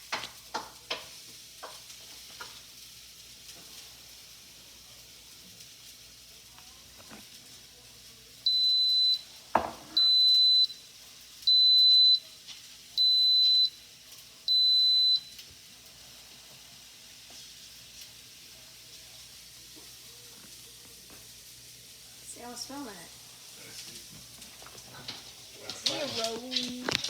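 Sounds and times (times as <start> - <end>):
rice cooker beeping: 8.5 - 9.4, 10.0 - 10.9, 11.5 - 12.4, 13.0 - 13.9, 14.5 - 15.4.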